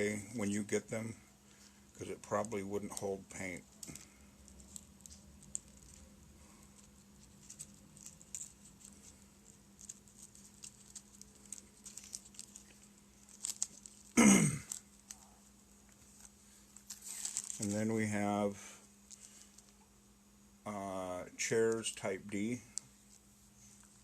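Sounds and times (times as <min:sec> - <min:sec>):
steady low hum: 0:00.0 - 0:24.0
plastic bags crinkling: 0:01.6 - 0:15.3, 0:16.1 - 0:17.8.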